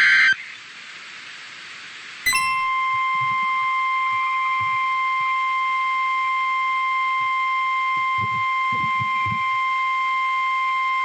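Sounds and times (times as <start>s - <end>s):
steady electronic warning tone: 2.3s - 2.8s.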